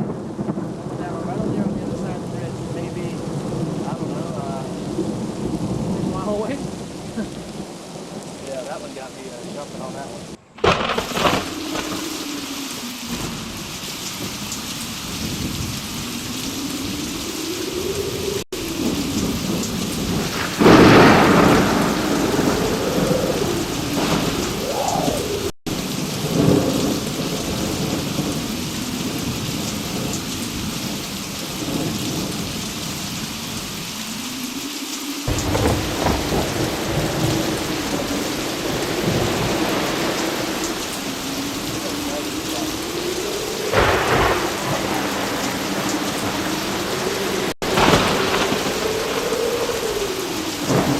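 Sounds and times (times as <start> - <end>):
heavy rain: 0.0 - 50.9
thunder rumbling: 0.0 - 50.9
loud thunder clap: 10.6 - 12.5, 18.3 - 30.2, 35.3 - 40.8, 43.6 - 50.9.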